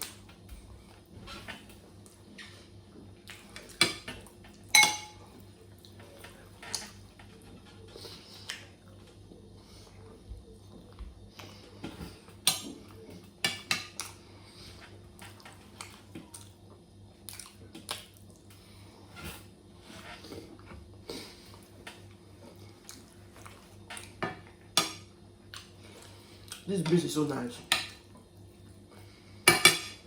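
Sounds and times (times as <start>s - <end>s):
cutlery clinking against a dish: 3.7s - 5.3s, 13.4s - 14.1s, 29.5s - 30.0s.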